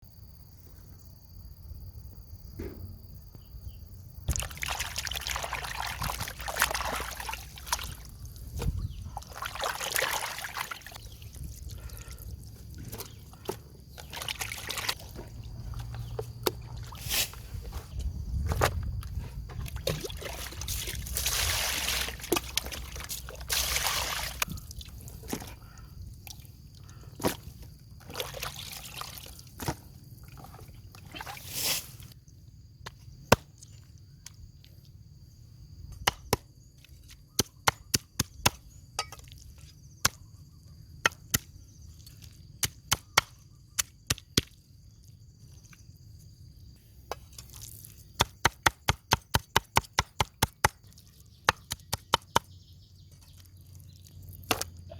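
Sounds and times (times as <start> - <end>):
water pouring and splashing: 4.3 - 16.0, 19.1 - 25.6, 28.0 - 32.2.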